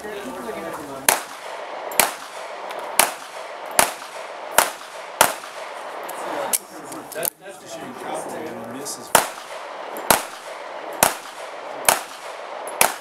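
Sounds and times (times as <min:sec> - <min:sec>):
handgun shots: 0:01.1 - 0:05.8, 0:09.1 - 0:13.0.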